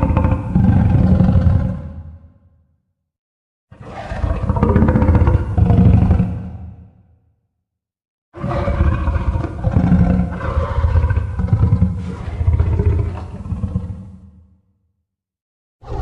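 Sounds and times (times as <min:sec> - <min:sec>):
deep monster roar: 0:00.0 - 0:02.4, 0:03.7 - 0:06.8, 0:08.4 - 0:14.6.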